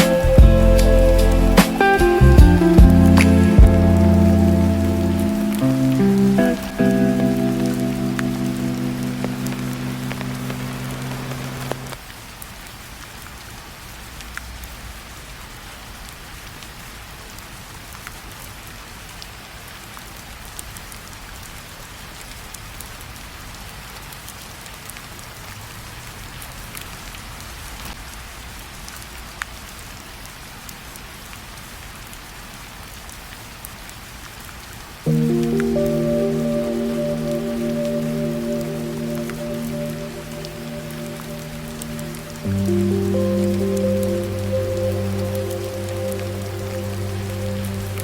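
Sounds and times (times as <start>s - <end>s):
lingering music note: 0.0s - 12.0s, 35.1s - 48.0s
steady rain: 0.0s - 48.0s.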